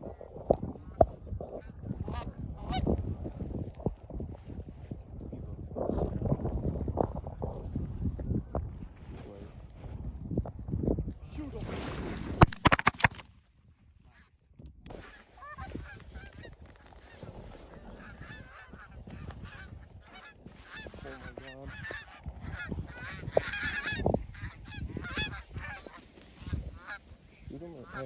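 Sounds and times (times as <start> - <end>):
geese honking: 15.3 - 27.2, 27.8 - 28.0.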